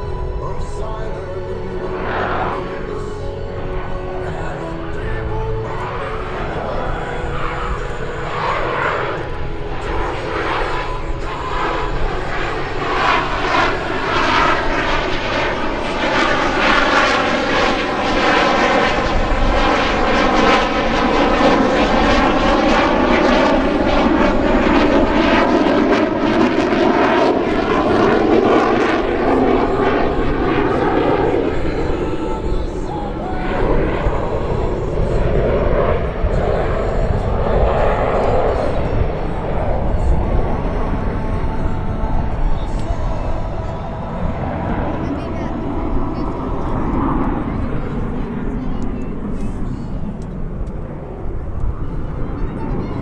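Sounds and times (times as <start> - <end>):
jet engines roaring: 0.0 - 53.0.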